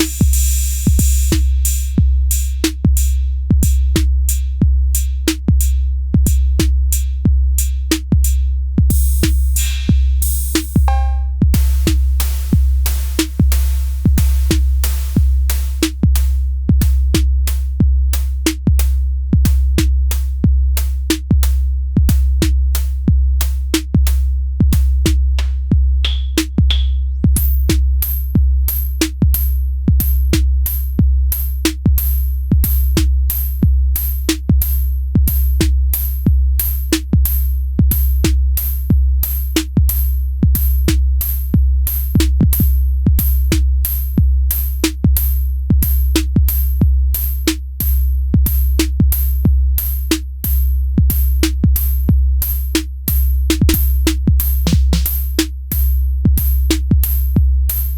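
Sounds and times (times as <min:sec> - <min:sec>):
deep kick drum: 0:00.0 - 0:57.9
fast hi-hat ticks: 0:00.0 - 0:57.9
sharp electronic drum hits: 0:10.7 - 0:12.6.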